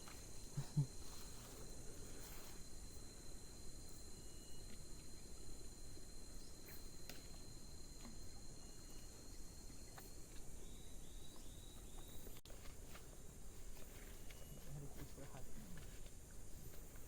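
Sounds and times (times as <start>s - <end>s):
insects chorus: 0.0s - 17.0s
thin whistle-like tone: 0.6s - 12.4s, 13.9s - 14.9s.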